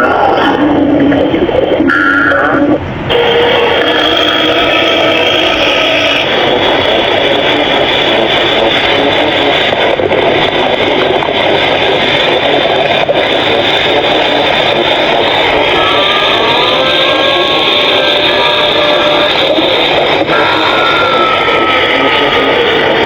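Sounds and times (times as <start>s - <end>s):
stomach growling: 0.0s - 13.3s.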